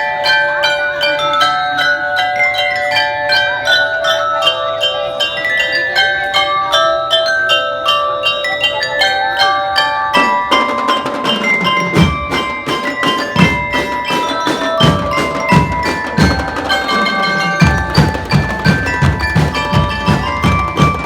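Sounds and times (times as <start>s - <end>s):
bell lyre melody: 0.0s - 21.0s
percussion strikes: 0.0s - 21.0s
bass drum beats: 13.3s - 21.0s.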